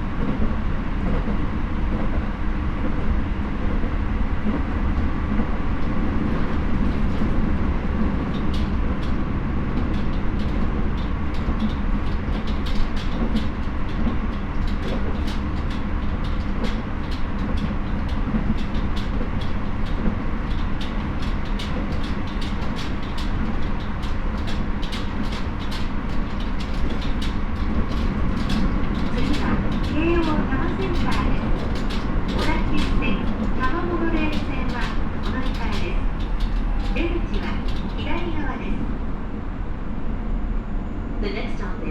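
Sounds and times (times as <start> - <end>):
train wheels rumbling on rail: 0.0 - 41.9
sharp clicks from track: 9.8 - 38.3.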